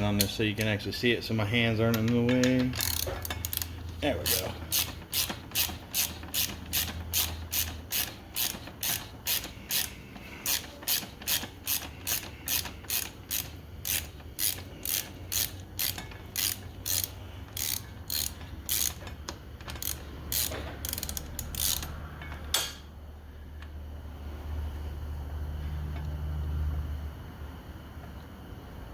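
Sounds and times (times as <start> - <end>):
socket ratchet clicking: 0.0 - 0.8, 1.9 - 22.7.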